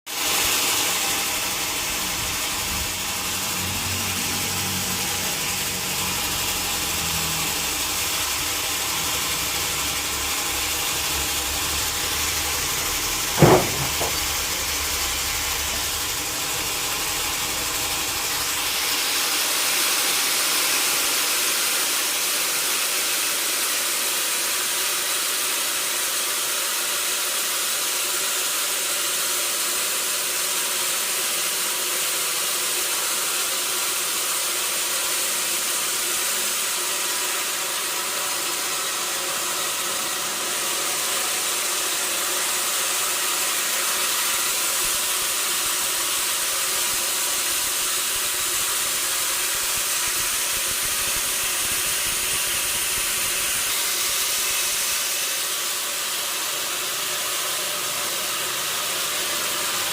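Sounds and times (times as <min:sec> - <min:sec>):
sawmill machinery hiss: 0:00.1 - 0:59.9
low engine drone: 0:00.8 - 0:19.4
sharp knock: 0:13.3 - 0:14.9.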